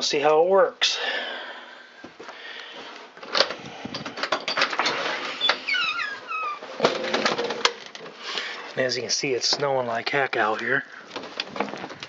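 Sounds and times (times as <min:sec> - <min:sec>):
door squeaking: 0:04.6 - 0:07.6.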